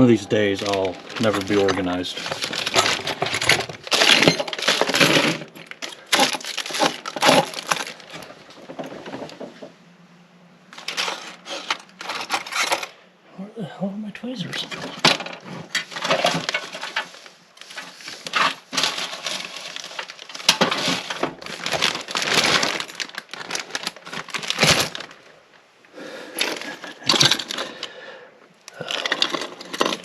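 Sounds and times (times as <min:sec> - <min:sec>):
metal tools clattering: 0:00.0 - 0:08.2, 0:10.8 - 0:12.9.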